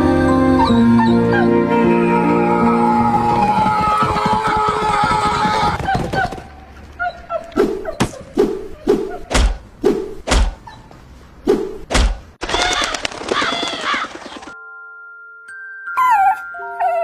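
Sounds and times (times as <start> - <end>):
music: 0.0 - 3.6, 14.6 - 17.0.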